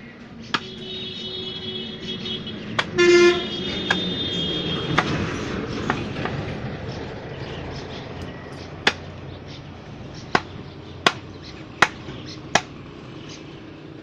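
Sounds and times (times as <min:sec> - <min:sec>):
cleaver chopping meat: 0:02.8 - 0:03.0, 0:04.9 - 0:05.2, 0:08.8 - 0:09.2, 0:10.2 - 0:12.8.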